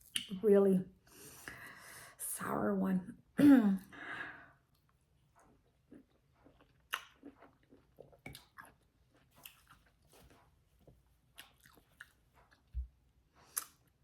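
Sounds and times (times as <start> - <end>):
person chewing: 4.8 - 12.8, 13.4 - 14.0.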